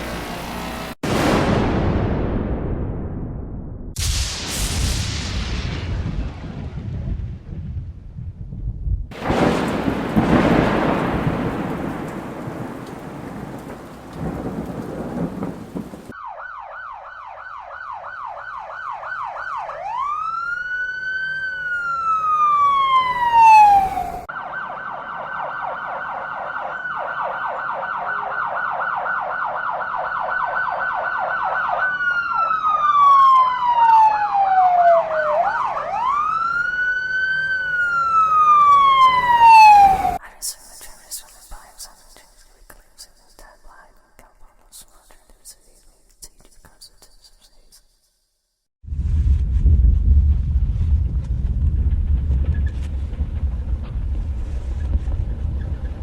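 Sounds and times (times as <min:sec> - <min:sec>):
rumble of thunder: 0:01.1 - 0:16.1, 0:48.8 - 0:56.0
emergency vehicle siren: 0:09.2 - 0:40.2.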